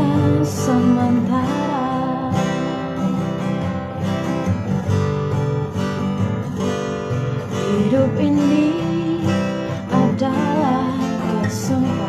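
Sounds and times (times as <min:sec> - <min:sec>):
person singing: 0:00.0 - 0:03.3, 0:07.5 - 0:12.0
strummed acoustic guitar: 0:00.0 - 0:12.0.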